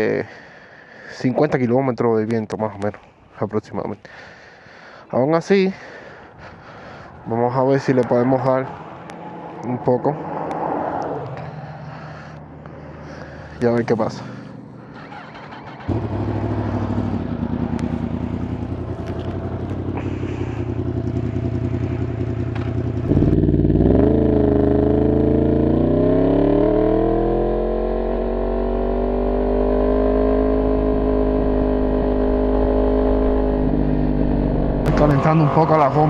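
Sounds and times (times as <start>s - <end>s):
motorcycle engine revving: 8.0s - 36.0s.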